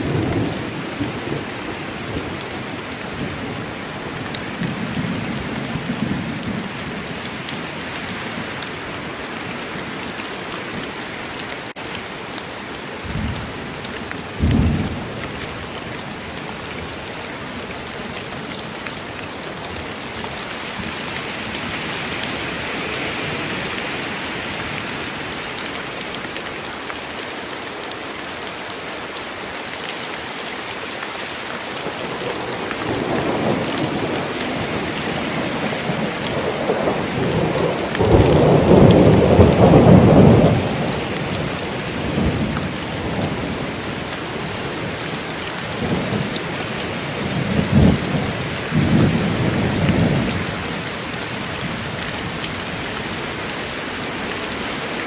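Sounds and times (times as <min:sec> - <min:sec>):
steady rain in a forest: 0:00.0 - 0:55.0
thunder rumbling: 0:14.4 - 0:15.4, 0:32.2 - 0:43.7.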